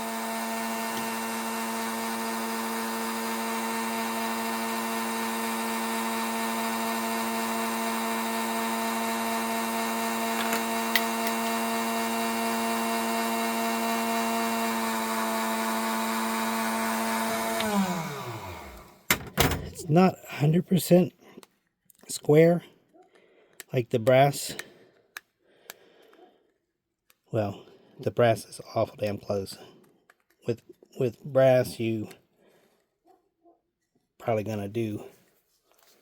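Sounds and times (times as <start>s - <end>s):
chop saw whining: 0.0s - 19.1s.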